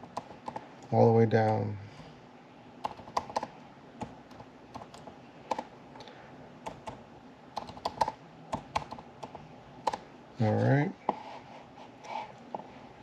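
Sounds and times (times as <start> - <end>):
keyboard typing: 0.0 - 1.6, 2.8 - 10.1.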